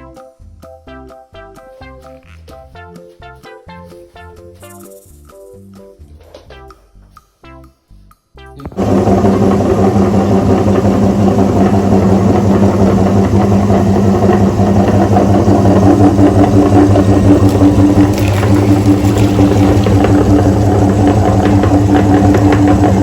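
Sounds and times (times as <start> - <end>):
motor humming and rattling: 8.7 - 23.0.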